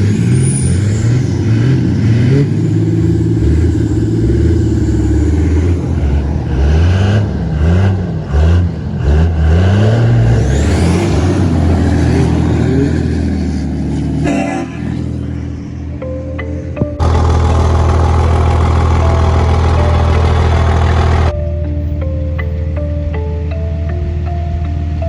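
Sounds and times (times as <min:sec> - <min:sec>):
truck engine revving: 0:00.0 - 0:22.6.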